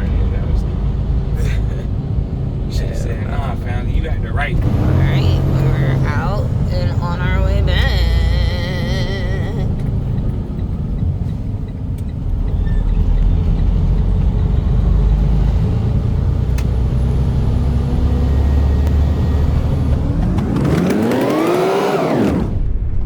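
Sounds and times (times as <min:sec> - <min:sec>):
truck diesel engine rumble: 0:00.0 - 0:22.6
road noise: 0:00.0 - 0:23.0
pitched tone rising and falling: 0:17.2 - 0:22.6.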